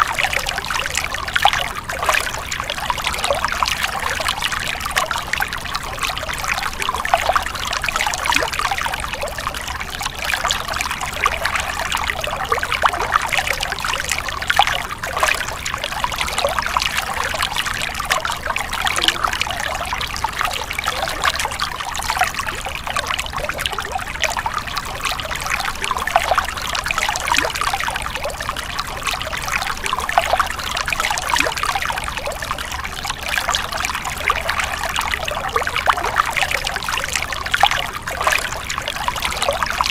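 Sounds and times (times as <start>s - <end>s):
stream water splashing over rocks: 0.0s - 39.9s.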